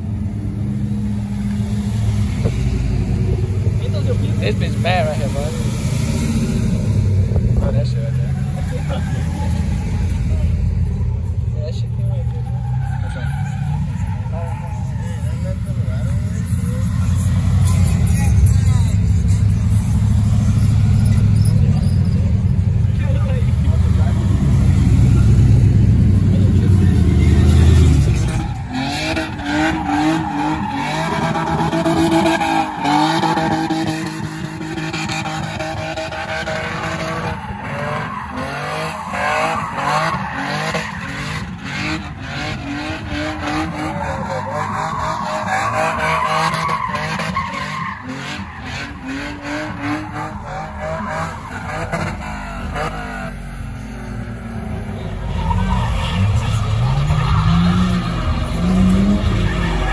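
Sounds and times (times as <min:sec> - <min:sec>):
truck engine revving high: 0:11.9 - 0:59.9
tyres squealing: 0:12.2 - 0:23.1, 0:26.6 - 0:53.4.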